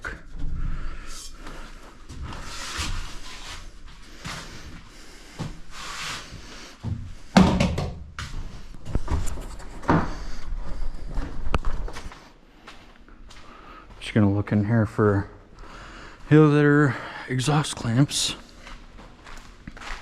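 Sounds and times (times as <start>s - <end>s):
objects rustling and clunking: 1.4s - 13.0s.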